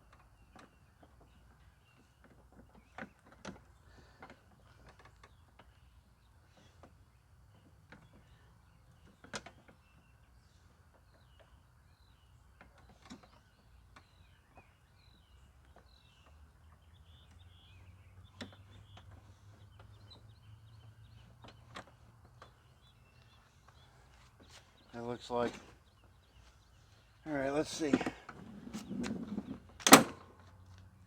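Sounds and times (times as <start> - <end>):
faint bird chirps: 0.0 - 29.0.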